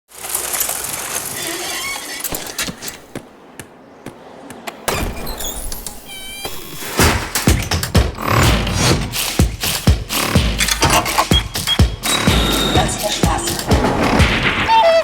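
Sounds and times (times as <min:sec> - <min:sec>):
sharp clicks: 0:07.3 - 0:12.8
voices: 0:12.1 - 0:14.0.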